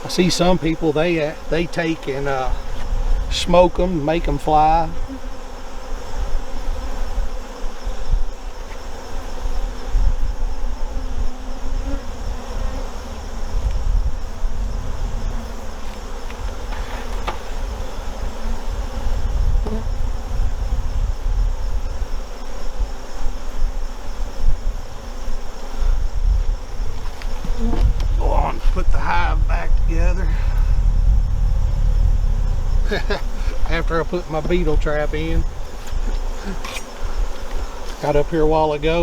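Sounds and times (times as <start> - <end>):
bees buzzing: 0.0 - 39.0
low rumble: 28.2 - 34.1.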